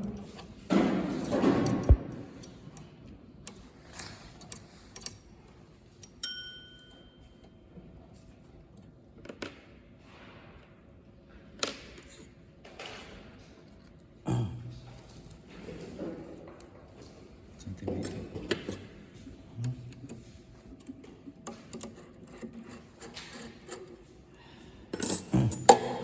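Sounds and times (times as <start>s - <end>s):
hard objects clicking and knocking: 0.0s - 2.6s, 25.0s - 26.0s.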